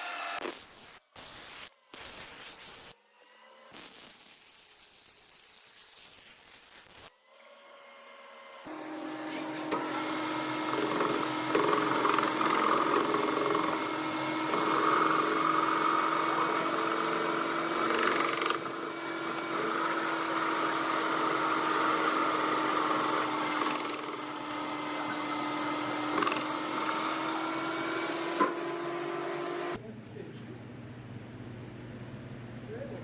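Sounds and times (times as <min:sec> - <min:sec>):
electric machine tool running: 0:07.4 - 0:29.8.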